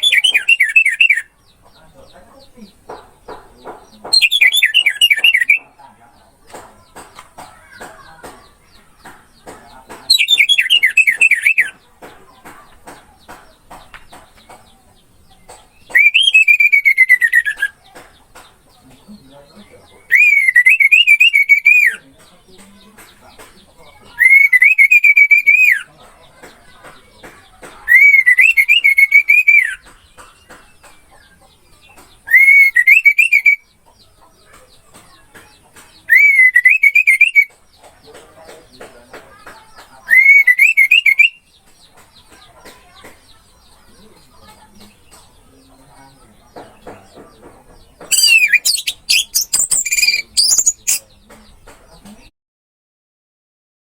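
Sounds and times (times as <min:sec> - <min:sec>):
thrush singing: 0:48.0 - 0:51.1.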